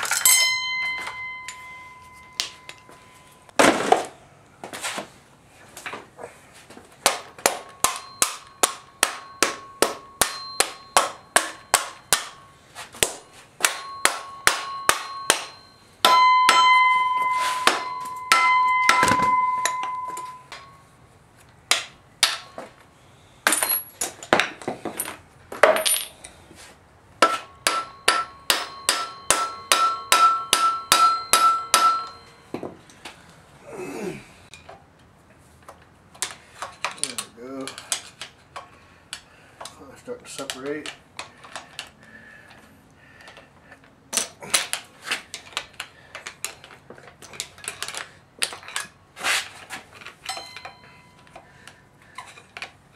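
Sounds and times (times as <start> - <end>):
metallic ringing tone: 0.1 - 3.5, 7.8 - 12.7, 13.7 - 21.0, 27.6 - 32.6, 50.3 - 51.3
hammer striking metal: 7.1 - 20.8, 27.2 - 32.4.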